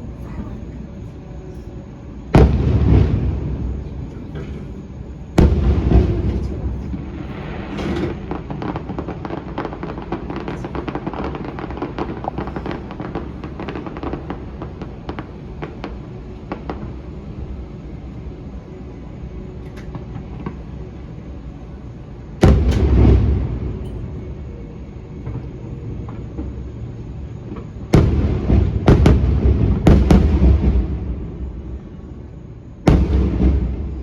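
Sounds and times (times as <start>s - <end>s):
fireworks popping and crackling: 5.4s - 17.0s, 22.4s - 24.0s, 27.6s - 31.8s, 32.9s - 34.0s.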